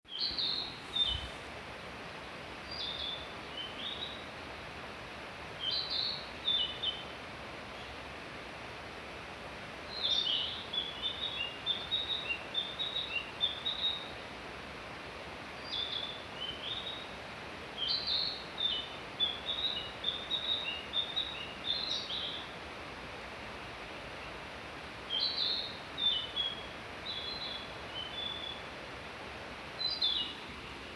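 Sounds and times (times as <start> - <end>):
songbird chirping: 0.1 - 1.5, 29.8 - 30.4
background hiss: 0.2 - 30.9.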